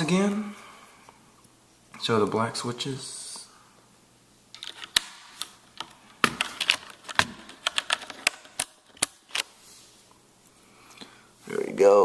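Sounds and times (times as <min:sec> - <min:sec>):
plastic keyboard clicks and clacks: 0:05.8 - 0:09.4.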